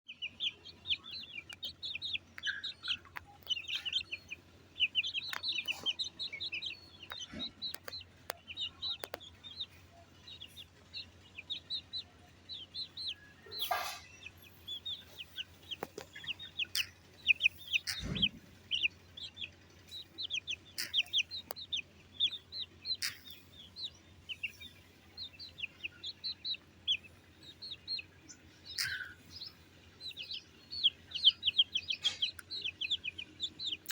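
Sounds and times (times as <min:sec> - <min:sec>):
chicks peeping: 0:00.1 - 0:33.9.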